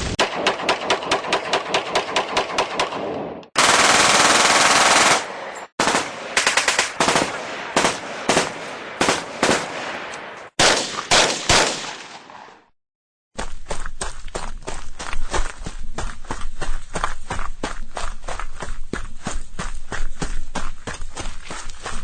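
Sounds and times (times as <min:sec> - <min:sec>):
machine-gun fire: 0:03.6 - 0:10.0, 0:10.6 - 0:12.2.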